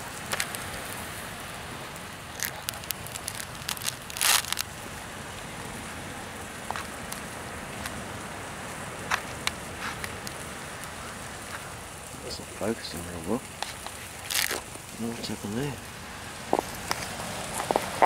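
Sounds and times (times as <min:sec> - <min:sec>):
sharp pops of fire: 0:00.0 - 0:01.2, 0:02.1 - 0:04.9, 0:09.0 - 0:18.0
campfire crackling: 0:00.0 - 0:18.0.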